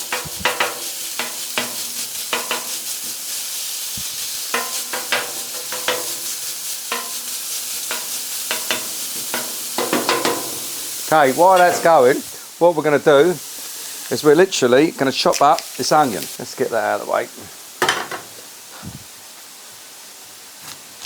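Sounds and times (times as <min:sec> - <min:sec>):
spatula clinking and scraping metal: 0:00.0 - 0:03.3, 0:04.2 - 0:12.2
bacon sizzling on a griddle: 0:00.0 - 0:21.0.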